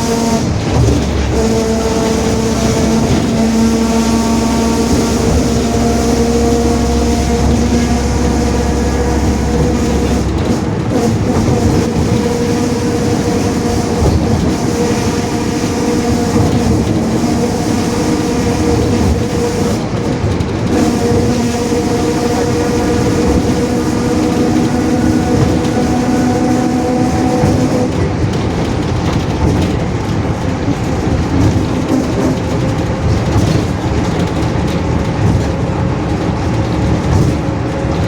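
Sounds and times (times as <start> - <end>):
differential whine: 0.0 - 19.6
deep bus engine rumble: 0.0 - 38.0.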